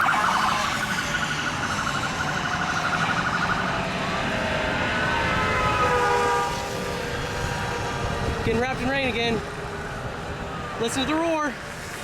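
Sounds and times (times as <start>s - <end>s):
electronic siren wavering: 0.0s - 8.3s
wind noise: 0.0s - 11.2s.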